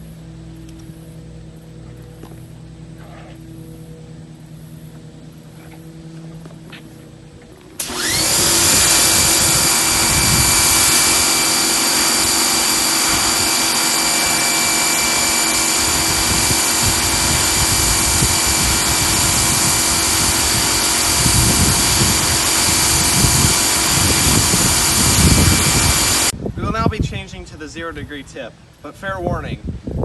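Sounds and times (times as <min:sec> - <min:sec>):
pressure washer motor whining: 0:00.0 - 0:26.4
water jet hissing: 0:07.8 - 0:26.3.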